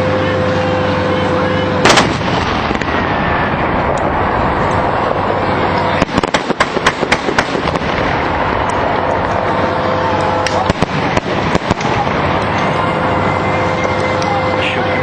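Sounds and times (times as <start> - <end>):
sharp cracking pops: 1.8 - 3.0, 5.7 - 9.2, 10.4 - 12.7
firework bang: 1.8 - 5.4, 6.0 - 9.0, 10.4 - 12.5.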